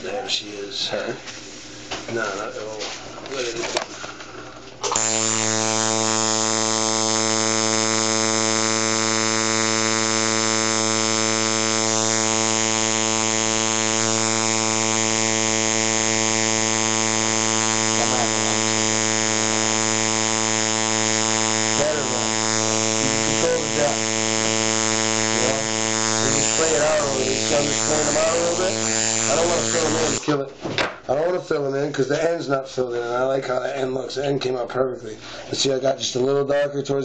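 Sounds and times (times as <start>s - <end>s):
electric tattoo machine buzzing: 4.8s - 30.2s.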